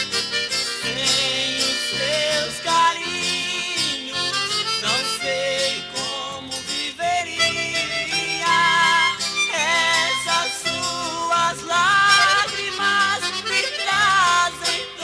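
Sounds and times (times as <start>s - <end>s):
plucked guitar: 0.0s - 15.0s
wavering lead melody: 7.3s - 15.0s.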